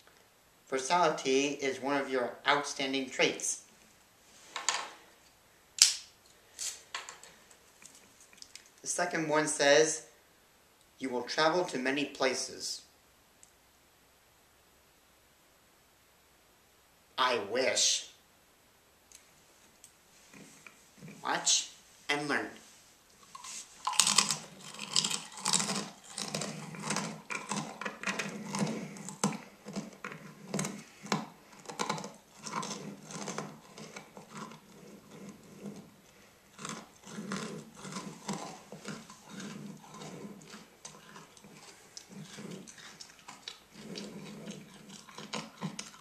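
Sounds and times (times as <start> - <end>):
crunchy cookies being chewed: 23.2 - 46.0.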